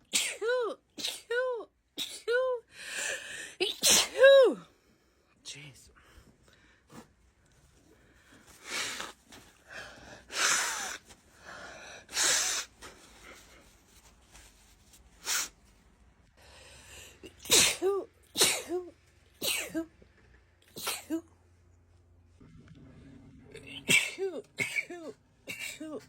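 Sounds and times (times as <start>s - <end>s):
woman sneezing: 0.0s - 2.6s, 3.6s - 4.6s, 17.3s - 19.9s, 20.7s - 21.3s, 23.7s - 26.0s.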